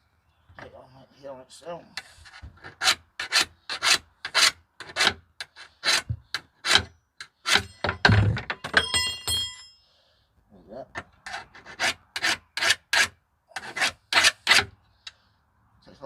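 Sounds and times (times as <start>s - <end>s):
metal file rasping on blade: 2.0s - 7.8s, 11.2s - 14.8s.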